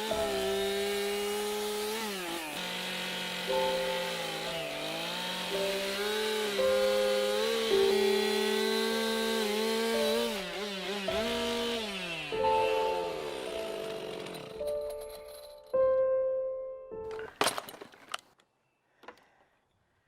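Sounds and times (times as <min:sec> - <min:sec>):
chainsaw cutting into wood: 0:00.0 - 0:15.7.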